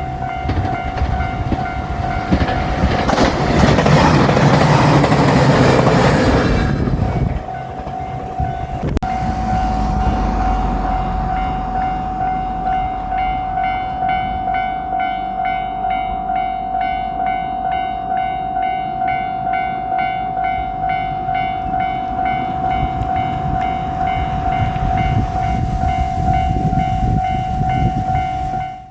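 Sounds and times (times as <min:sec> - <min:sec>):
level crossing bell clanging: 0:00.0 - 0:06.3, 0:07.2 - 0:28.9
diesel railcar rumble: 0:00.0 - 0:28.9
steady electronic tone: 0:07.6 - 0:16.6.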